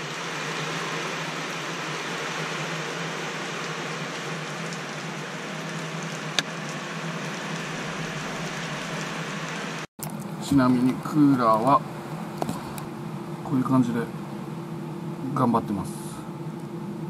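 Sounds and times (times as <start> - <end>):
heavy rain and wind on roof: 0.0 - 12.9
low steady hum: 0.0 - 17.0.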